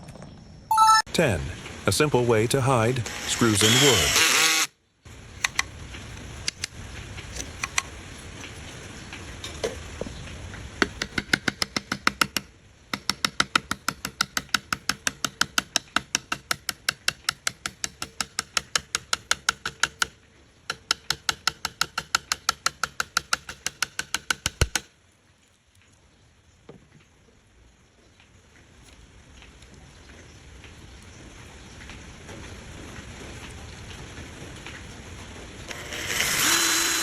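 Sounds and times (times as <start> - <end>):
sharp taps on wood: 20.7 - 24.9.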